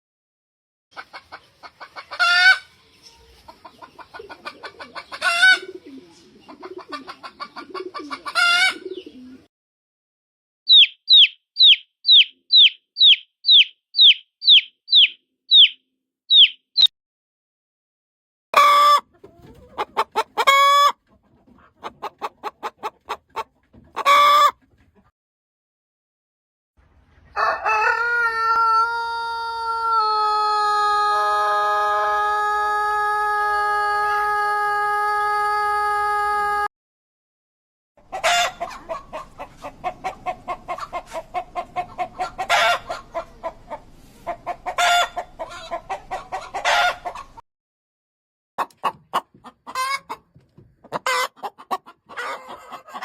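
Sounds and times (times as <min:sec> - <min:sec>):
chick peeping: 0:00.9 - 0:09.5, 0:10.7 - 0:16.9, 0:18.6 - 0:25.1, 0:38.0 - 0:47.4, 0:48.6 - 0:53.0
chicken squawks and clucks: 0:00.9 - 0:09.5, 0:18.6 - 0:25.1, 0:26.8 - 0:36.7, 0:38.0 - 0:47.4, 0:48.6 - 0:53.0.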